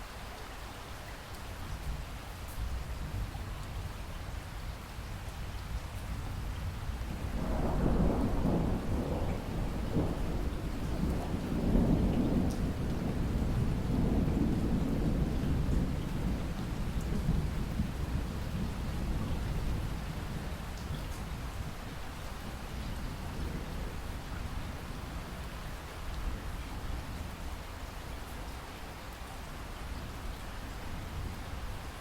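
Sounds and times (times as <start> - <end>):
steady rain: 0.0 - 32.0
rolling thunder: 7.1 - 20.8.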